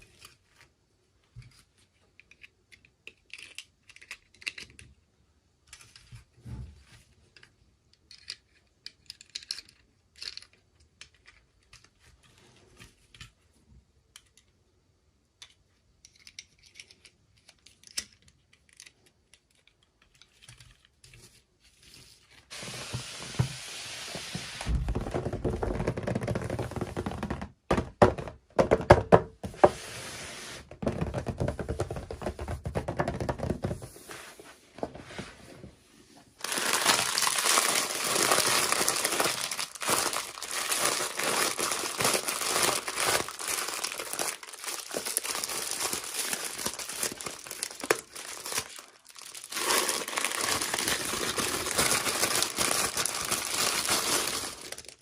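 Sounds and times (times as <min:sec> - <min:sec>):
packaging rustling and crinkling: 0:22.2 - 0:27.5, 0:36.4 - 0:55.0
sharp knocks and thuds: 0:24.7 - 0:26.2.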